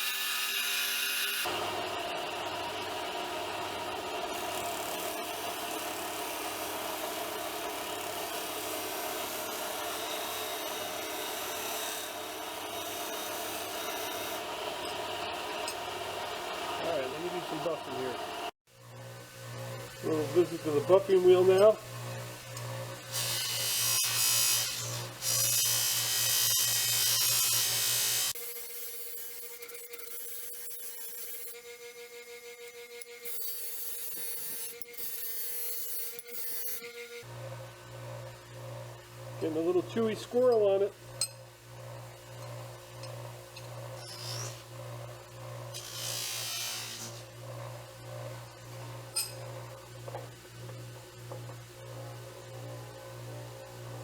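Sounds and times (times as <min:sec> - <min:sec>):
bench grinder motor hum: 0:00.0 - 0:41.1, 0:41.7 - 0:54.0
scratchy grinding of steel: 0:44.0 - 0:44.7, 0:45.7 - 0:47.3
metal hissing on buffing wheel: 0:45.8 - 0:47.2.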